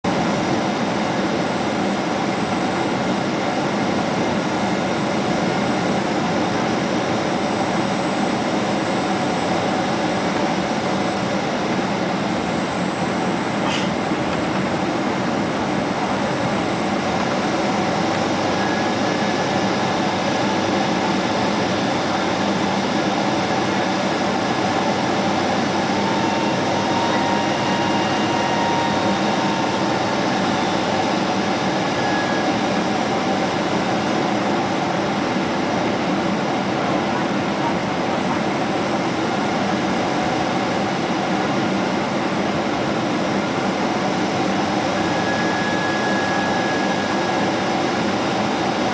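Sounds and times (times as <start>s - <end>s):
airliner cabin airflow rush: 0.2s - 48.9s.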